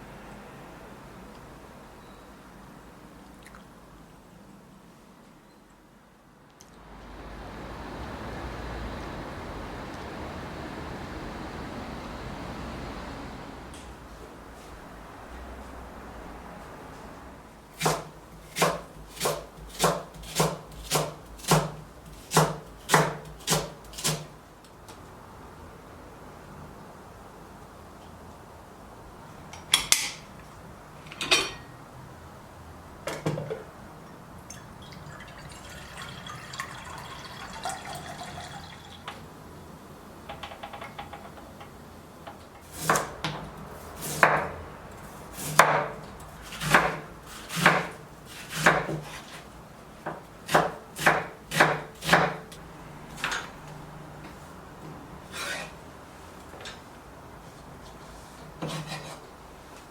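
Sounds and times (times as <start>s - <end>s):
knife chopping on wooden board: 17.8s - 24.3s, 42.7s - 43.4s, 44.0s - 44.6s, 45.3s - 49.4s, 50.0s - 52.6s, 58.6s - 59.2s.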